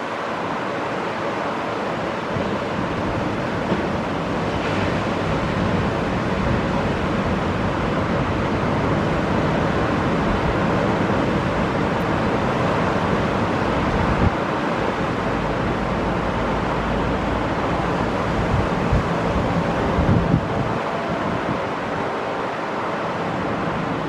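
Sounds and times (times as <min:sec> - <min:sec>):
ocean surf breaking on beach: 0:00.0 - 0:24.0
wind buffeting microphone: 0:17.0 - 0:22.2.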